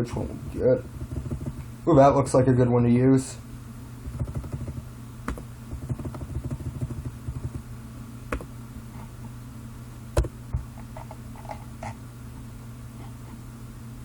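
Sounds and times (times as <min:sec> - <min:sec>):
steady low hum: 0:00.0 - 0:14.0
computer mouse clicking: 0:04.1 - 0:07.6.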